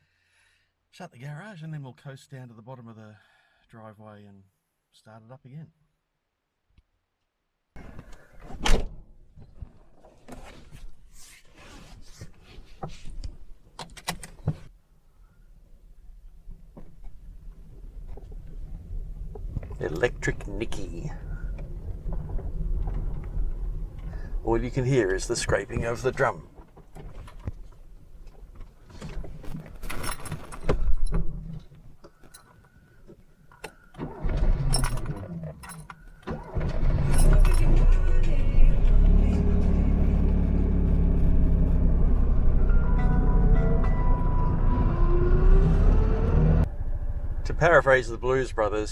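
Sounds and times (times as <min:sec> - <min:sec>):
car engine rumble: 0:15.6 - 0:32.0, 0:34.0 - 0:48.9
brake drum scraping and rattling: 0:21.3 - 0:27.8.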